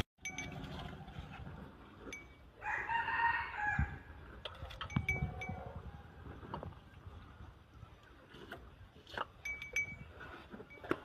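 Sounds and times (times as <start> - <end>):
light clinks: 9.4 - 11.0.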